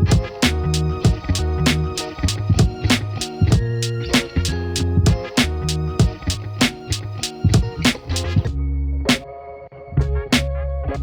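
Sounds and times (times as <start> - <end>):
hip hop beat: 0.0 - 8.5.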